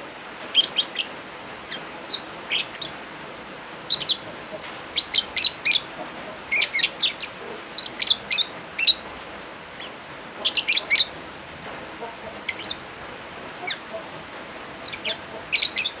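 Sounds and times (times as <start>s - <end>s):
rain hiss: 0.0s - 16.0s
lovebirds chirping: 0.5s - 9.0s, 9.8s - 11.2s, 12.0s - 12.8s, 13.6s - 14.0s, 14.8s - 16.0s.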